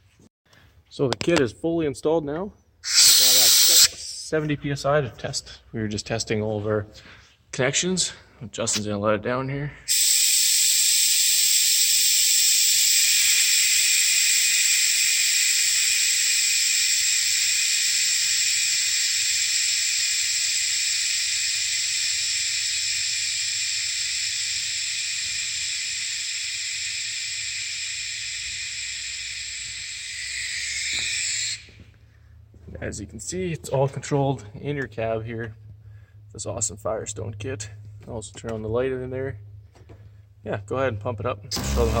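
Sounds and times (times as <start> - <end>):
compressed air hissing: 2.8 - 4.1, 9.8 - 31.8, 41.5 - 42.0.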